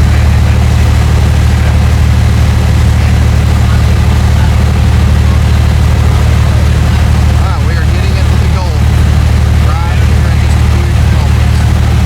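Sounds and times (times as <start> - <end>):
boat engine low drone: 0.0 - 12.0.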